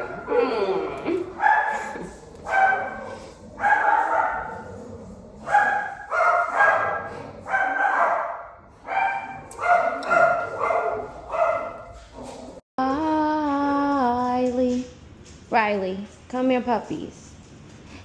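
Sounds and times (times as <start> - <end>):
dog barking: 1.4 - 1.8, 2.5 - 4.6, 5.4 - 11.9.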